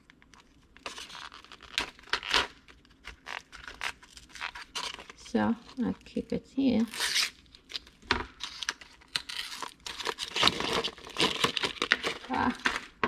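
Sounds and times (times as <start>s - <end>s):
plastic and foil crinkling: 0.0s - 13.0s.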